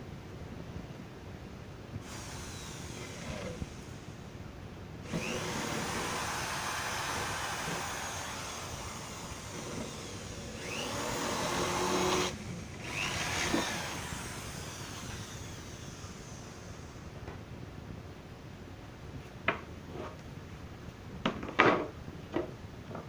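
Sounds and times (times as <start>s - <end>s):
table saw motor whining: 2.0s - 4.1s, 5.1s - 17.1s.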